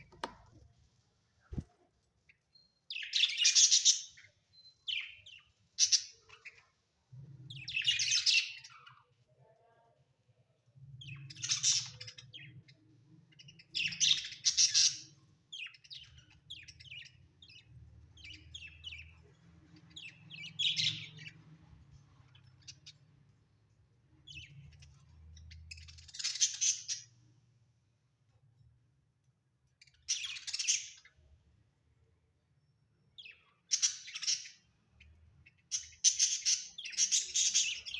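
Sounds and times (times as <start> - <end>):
budgerigars chirping: 2.9 - 6.6, 11.0 - 21.4, 24.2 - 27.1, 29.8 - 31.1, 33.2 - 34.7, 35.4 - 37.9.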